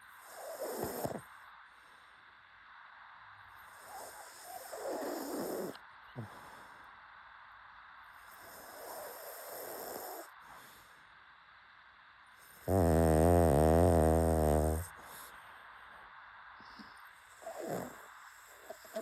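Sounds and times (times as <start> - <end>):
dog snoring: 0.2 - 1.3, 3.7 - 6.3, 8.3 - 10.8, 12.4 - 15.3, 17.3 - 19.0.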